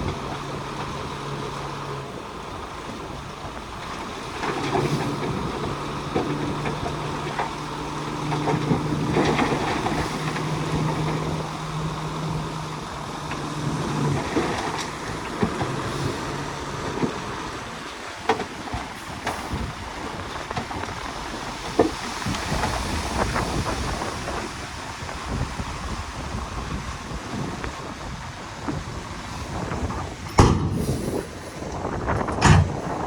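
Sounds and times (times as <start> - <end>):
bulldozer engine rumbling: 0.0 - 33.0
loud knocks: 30.3 - 30.9.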